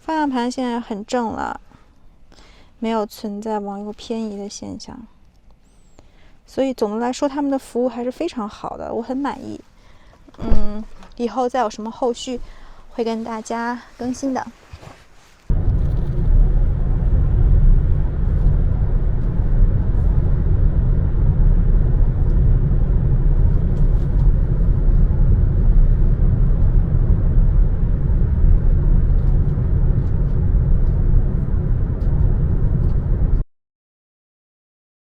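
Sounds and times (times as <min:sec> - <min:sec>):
moving car road and wind noise: 0:15.5 - 0:33.4.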